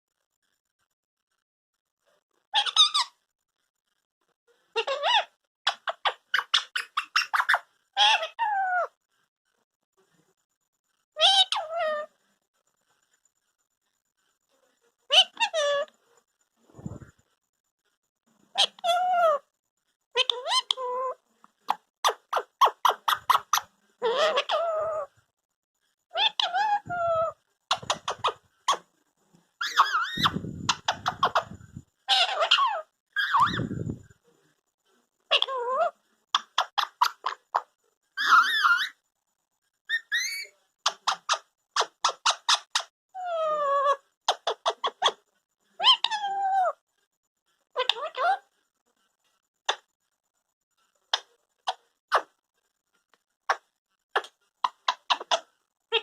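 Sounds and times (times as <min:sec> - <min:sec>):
parakeet harsh squawks: 0:02.6 - 0:03.2, 0:04.7 - 0:08.9, 0:11.2 - 0:12.1, 0:15.1 - 0:15.9, 0:18.5 - 0:19.4, 0:20.2 - 0:21.2, 0:22.0 - 0:25.1, 0:26.1 - 0:28.8, 0:29.6 - 0:33.7, 0:35.3 - 0:39.0, 0:39.9 - 0:45.2, 0:45.8 - 0:46.8, 0:53.5 - 0:56.0
parakeet clicks and chirps: 0:05.7 - 0:08.4, 0:27.7 - 0:28.9, 0:29.6 - 0:33.7, 0:36.4 - 0:39.0, 0:39.9 - 0:42.9, 0:53.5 - 0:56.0
parrot scolding calls: 0:11.2 - 0:12.1, 0:22.0 - 0:25.1, 0:26.1 - 0:28.8, 0:29.6 - 0:31.5, 0:32.1 - 0:33.7, 0:35.3 - 0:39.0, 0:39.9 - 0:45.2, 0:45.8 - 0:46.8.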